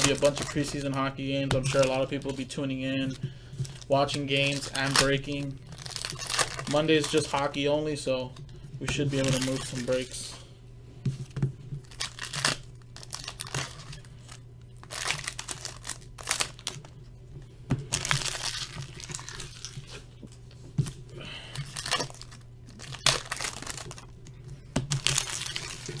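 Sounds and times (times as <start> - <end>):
card pack wrappers tearing: 0.0 - 7.7, 9.1 - 10.3, 11.8 - 16.9, 17.9 - 20.1, 21.5 - 24.2, 24.9 - 26.0
steady low hum: 0.0 - 26.0.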